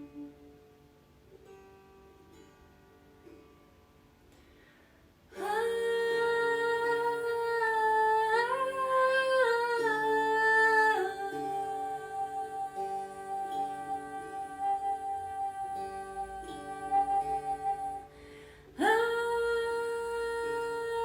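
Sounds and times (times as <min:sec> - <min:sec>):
soft plucked guitar: 0:00.0 - 0:21.0
person humming long notes: 0:05.4 - 0:18.1.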